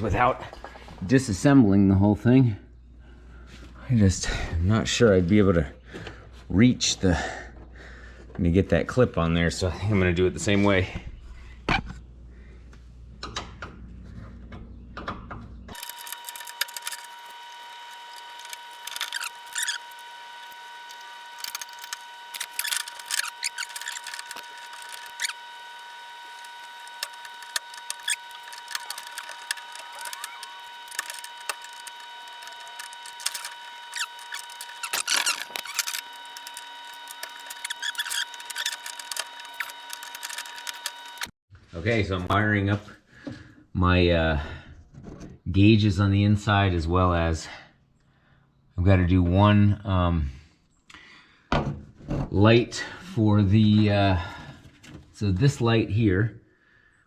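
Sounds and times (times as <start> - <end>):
high-pitched electrical whine: 15.7 - 41.3.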